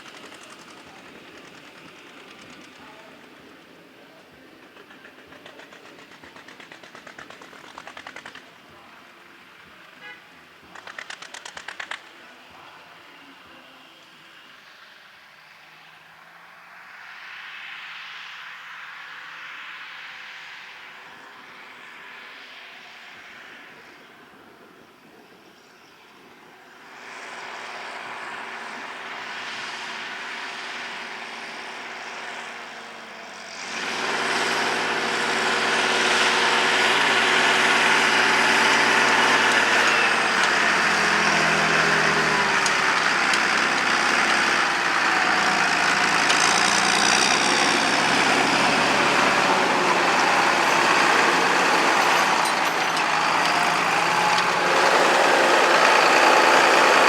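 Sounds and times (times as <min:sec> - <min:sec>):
diesel tractor engine running: 0:00.0 - 0:14.5, 0:26.7 - 0:57.0.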